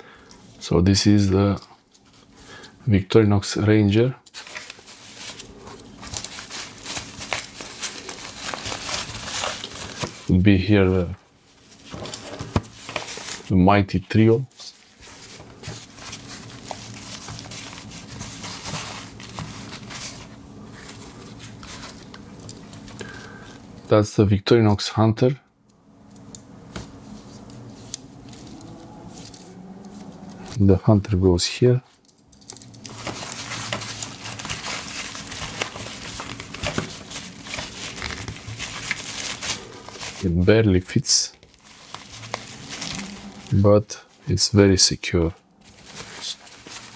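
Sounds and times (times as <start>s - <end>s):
steady low hum: 0.0s - 46.9s
small crinkles and clicks: 4.2s - 10.3s, 14.6s - 23.2s, 26.0s - 30.6s, 31.9s - 40.2s, 41.3s - 43.6s
fabric pouch rustling: 4.4s - 10.3s, 14.7s - 23.0s, 32.8s - 40.3s, 41.5s - 43.6s, 45.6s - 46.9s.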